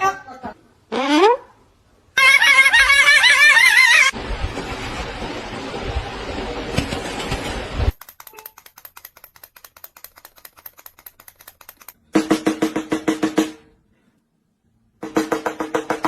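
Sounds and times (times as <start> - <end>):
rapid even tapping: 7.9 - 12.0.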